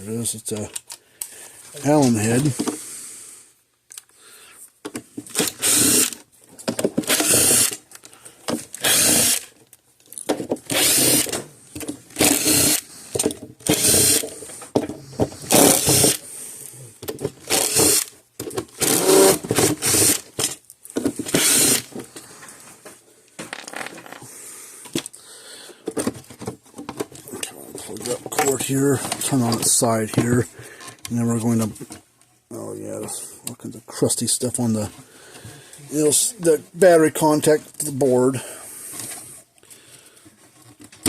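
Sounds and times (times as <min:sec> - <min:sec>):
power drill bursts: 0:05.4 - 0:06.2, 0:07.0 - 0:07.8, 0:08.8 - 0:09.5, 0:10.7 - 0:11.3, 0:12.2 - 0:12.9, 0:13.6 - 0:14.3, 0:15.5 - 0:16.2, 0:17.5 - 0:18.1, 0:18.8 - 0:20.2, 0:21.3 - 0:21.9.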